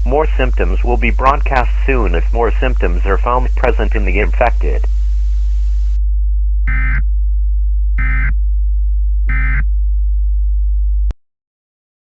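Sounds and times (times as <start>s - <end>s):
buzzy digital tone bursts: 0.0s - 6.0s
steady low hum: 0.0s - 6.6s.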